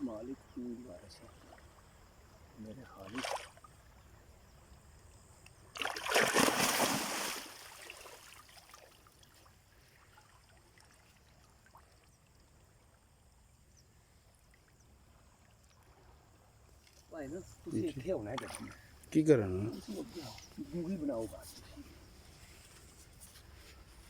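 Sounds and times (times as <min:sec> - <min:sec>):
faint river flowing: 0:00.0 - 0:24.0
loud water splash: 0:05.8 - 0:08.2.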